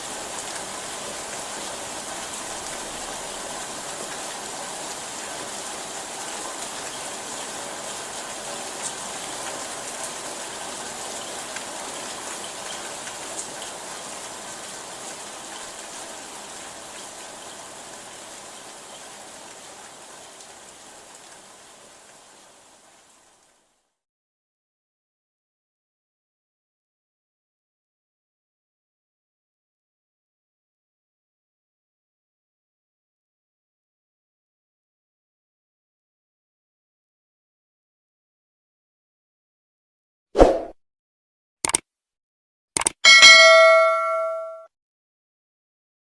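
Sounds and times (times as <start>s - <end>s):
steady rainfall: 0.0s - 24.0s.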